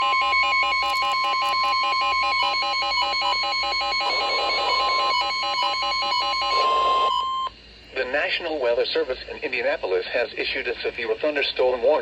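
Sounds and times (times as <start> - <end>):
steady high alert tone: 0.0 - 7.5.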